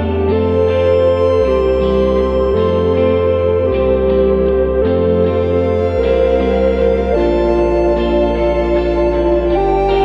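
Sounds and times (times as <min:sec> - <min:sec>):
ambient guitar with echo: 0:00.0 - 0:10.0
sustained bass notes: 0:00.0 - 0:10.0.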